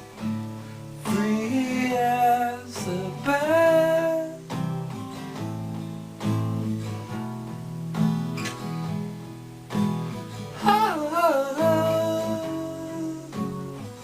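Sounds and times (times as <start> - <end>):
acoustic guitar strumming: 0.0 - 14.0
person singing: 1.0 - 4.5, 10.6 - 14.0.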